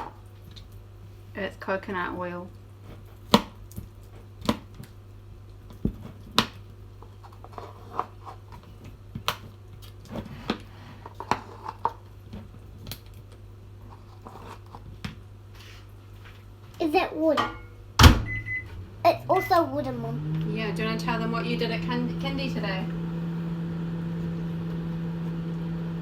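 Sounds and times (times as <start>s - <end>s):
steady low hum: 17.9s - 26.0s.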